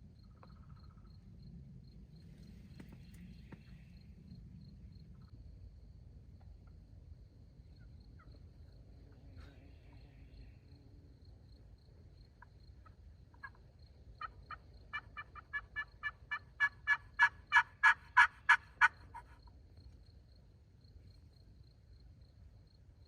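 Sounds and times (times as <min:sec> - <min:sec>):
turkey call yelps: 0:14.2 - 0:19.4.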